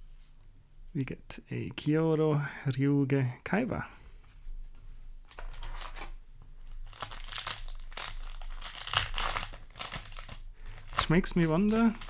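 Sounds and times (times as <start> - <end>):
foil tearing: 5.3 - 12.0
foil wrapper crinkling: 5.3 - 12.0.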